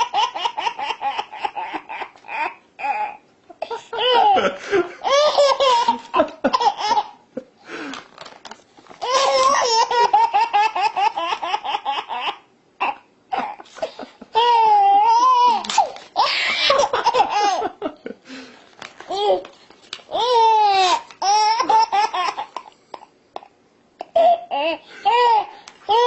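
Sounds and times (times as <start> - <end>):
baby laughing: 0.0 - 7.2, 9.0 - 17.8, 20.1 - 22.8, 24.0 - 26.0
baby squealing: 9.0 - 13.6, 14.4 - 17.4
paper tearing: 15.6 - 16.1.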